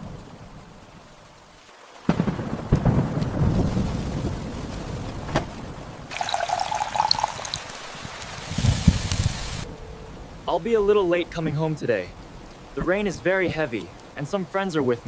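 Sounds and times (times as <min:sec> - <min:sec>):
steady rain: 0:00.0 - 0:15.0
sharp crack of thunder: 0:02.0 - 0:06.1
thunder rumbling: 0:02.0 - 0:10.3.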